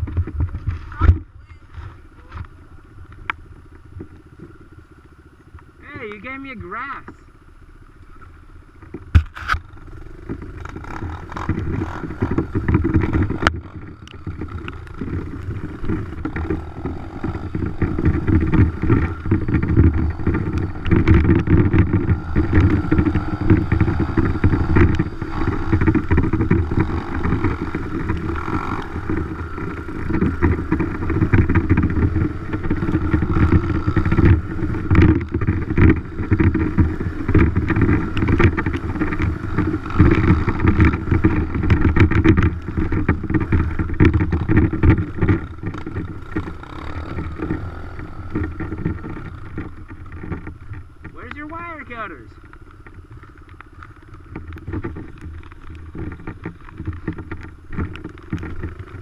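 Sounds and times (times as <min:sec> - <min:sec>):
dirt bike engine revving: 0:04.6 - 0:52.5.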